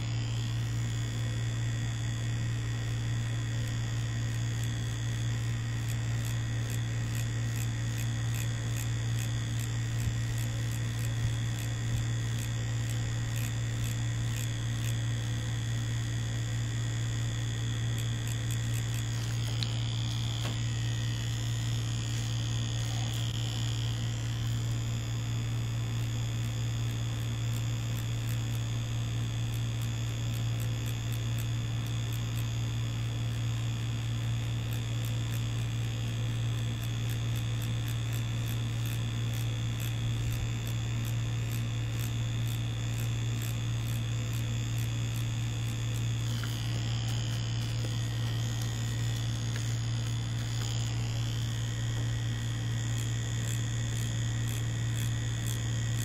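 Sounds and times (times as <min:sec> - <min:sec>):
tattoo machine buzzing: 0:00.0 - 0:56.0.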